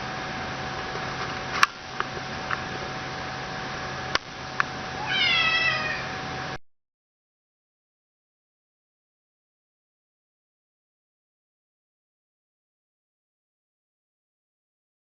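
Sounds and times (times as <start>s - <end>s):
steady hiss and hum: 0.0s - 6.6s
cat meowing: 5.0s - 6.2s.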